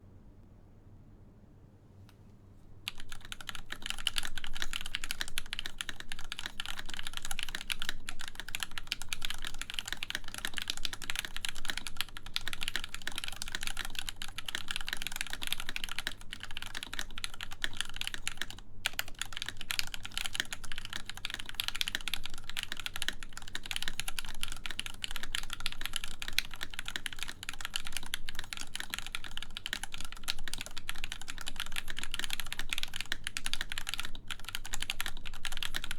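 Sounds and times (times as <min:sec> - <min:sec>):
fast mechanical keyboard typing: 0:02.9 - 0:35.9.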